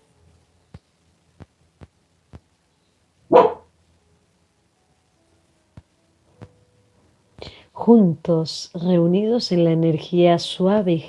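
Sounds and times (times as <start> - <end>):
dog barking sharply: 3.3 - 3.7.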